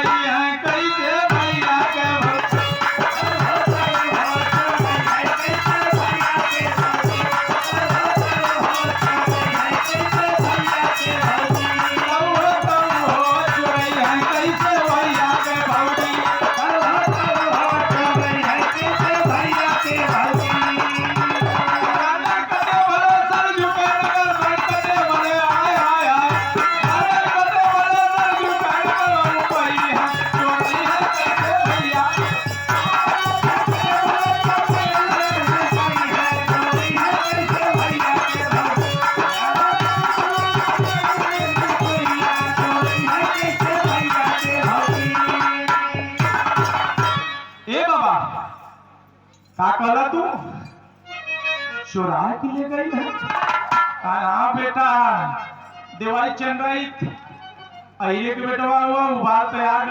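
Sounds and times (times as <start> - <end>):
harmonium melody: 0.0 - 48.6
dholak drum rhythm: 0.0 - 50.6, 52.5 - 59.9.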